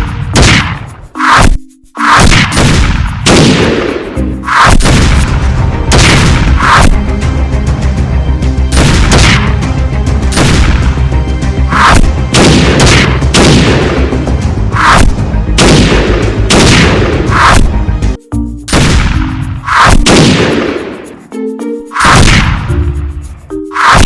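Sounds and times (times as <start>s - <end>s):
booming hits with falling sweeps: 0.0s - 7.0s
epic background music: 0.0s - 24.0s.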